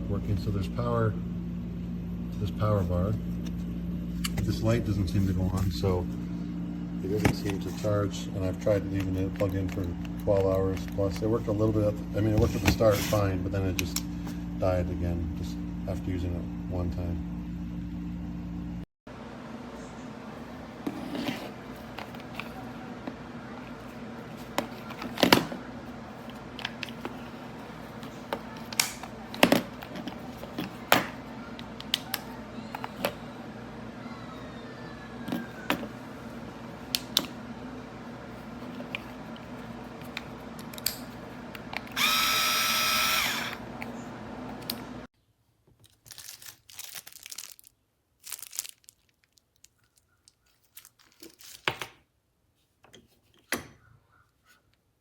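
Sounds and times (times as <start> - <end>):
cordless screwdriver motor whine: 41.8 - 43.7.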